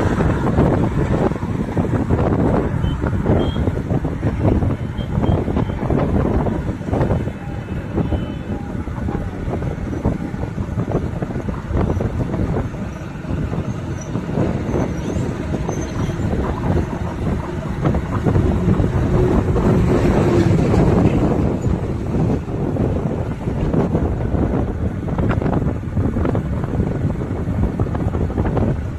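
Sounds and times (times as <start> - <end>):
vehicle rumble: 0.0 - 28.9.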